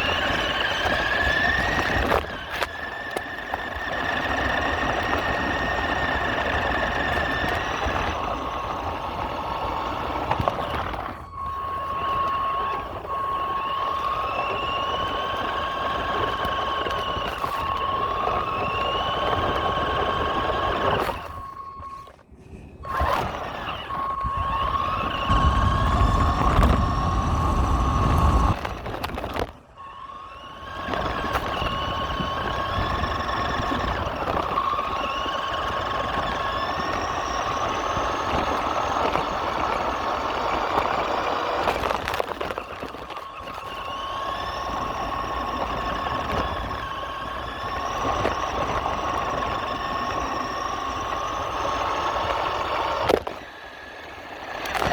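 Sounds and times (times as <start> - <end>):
toy truck motor whining: 0.0 - 54.9
low rumble: 25.2 - 29.5.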